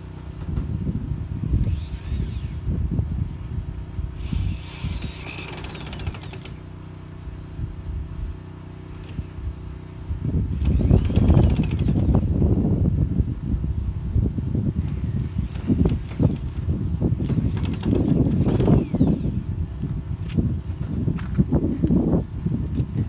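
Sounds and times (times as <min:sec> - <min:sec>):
cordless drill driving screws: 0:01.5 - 0:02.8, 0:04.2 - 0:06.7, 0:10.5 - 0:12.2, 0:14.8 - 0:20.8.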